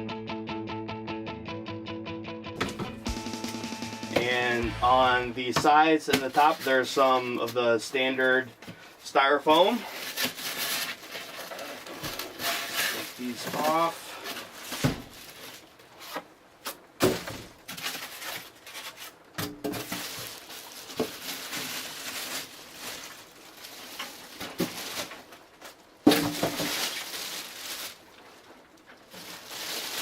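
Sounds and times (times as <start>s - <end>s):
plastic bag rustling: 2.6s - 30.0s
styrofoam squeaking and scraping: 6.2s - 30.0s.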